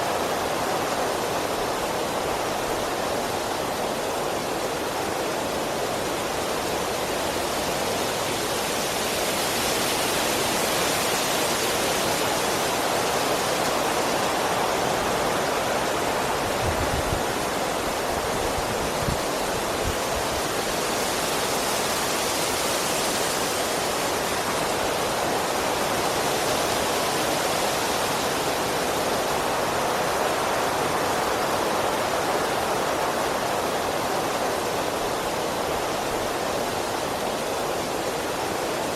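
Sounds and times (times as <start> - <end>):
strong wind through trees: 0.0 - 38.9.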